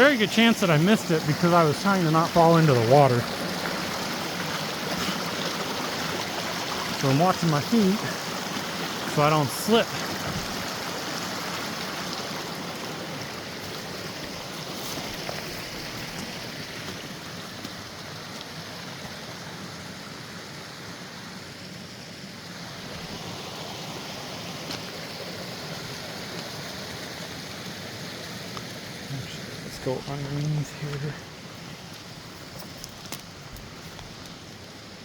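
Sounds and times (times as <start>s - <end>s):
creek rushing over rocks: 0.0s - 21.7s, 22.4s - 35.0s.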